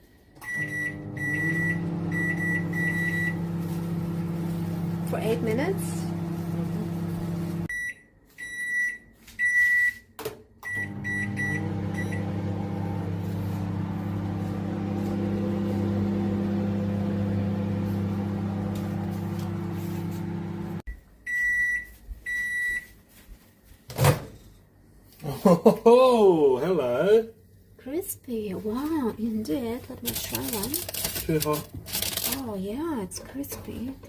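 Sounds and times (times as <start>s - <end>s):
microwave beeps: 0.4s - 5.0s, 6.0s - 22.9s
microwave oven humming: 0.4s - 7.7s, 10.7s - 20.8s.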